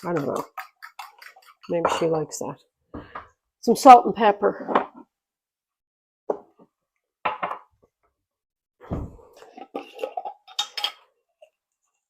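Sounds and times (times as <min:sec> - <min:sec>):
low thump: 0:08.8 - 0:09.3
kitchen utensils clattering: 0:09.4 - 0:11.1.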